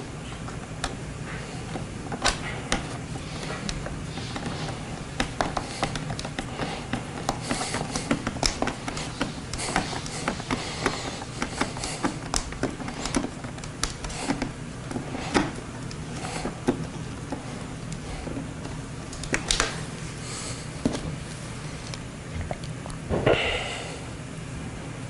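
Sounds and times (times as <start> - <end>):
low steady hum: 0.0 - 25.0
hard plastic parts clicking: 1.7 - 19.8.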